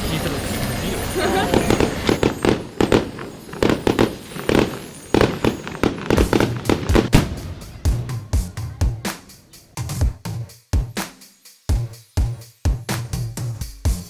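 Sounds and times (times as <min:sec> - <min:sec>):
fireworks bangs and crackles: 0:00.0 - 0:10.0
music: 0:00.0 - 0:14.0
deep fireworks thumps: 0:01.5 - 0:10.2.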